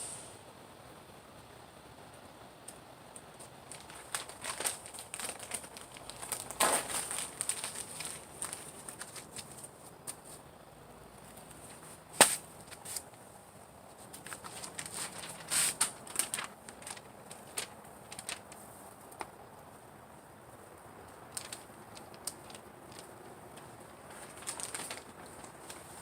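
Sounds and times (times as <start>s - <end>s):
paper burning and crackling: 3.4s - 10.4s, 11.3s - 13.2s, 13.9s - 19.4s, 21.1s - 26.0s.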